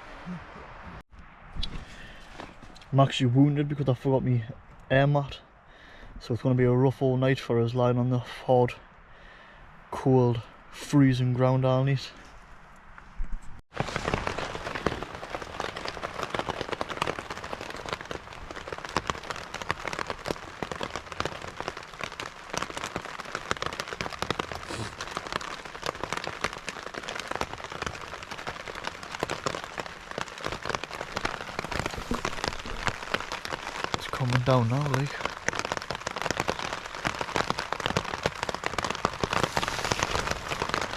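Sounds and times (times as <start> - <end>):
heavy rain on fabric shelter: 0.0 - 1.0, 13.7 - 40.9.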